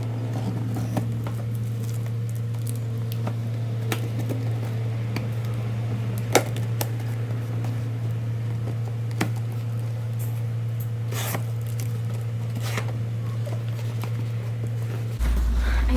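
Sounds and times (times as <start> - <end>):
steady low hum: 15.2 - 15.9.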